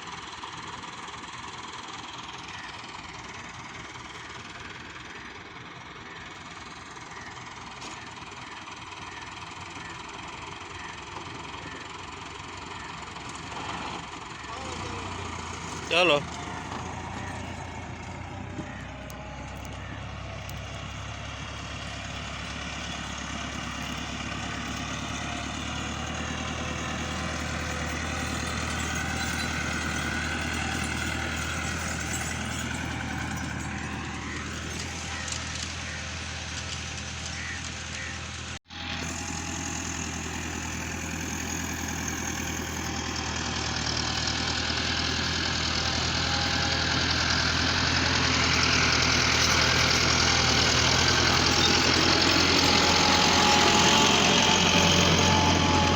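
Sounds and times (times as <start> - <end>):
tractor engine running: 0.0 - 55.9.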